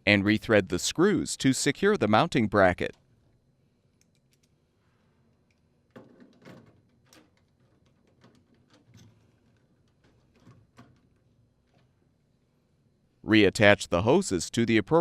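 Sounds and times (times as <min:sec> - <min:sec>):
faint clicks and knocks: 0:05.3 - 0:12.0.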